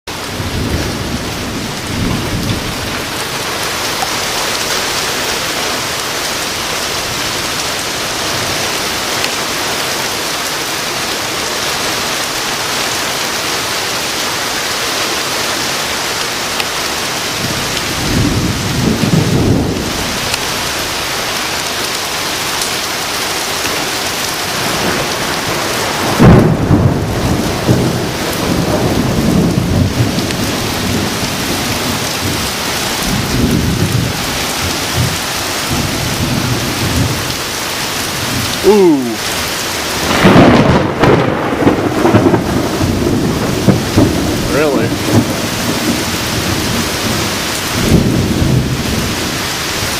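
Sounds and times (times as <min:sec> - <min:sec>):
thunder rumbling: 0:00.1 - 0:05.2, 0:17.4 - 0:21.3, 0:24.5 - 0:49.9
heavy rain falling: 0:00.1 - 0:49.9.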